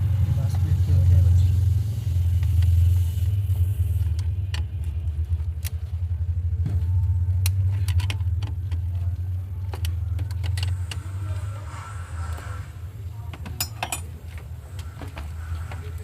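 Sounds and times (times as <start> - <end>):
car engine idling: 0.0 - 16.0
light clicks and metallic clinks: 13.4 - 14.9.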